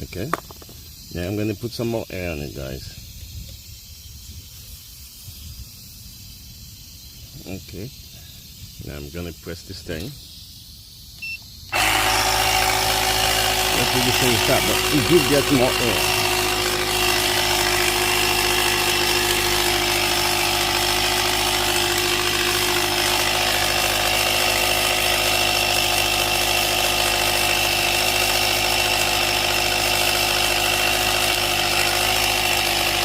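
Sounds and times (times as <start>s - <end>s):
air compressor motor drone: 11.7s - 33.0s.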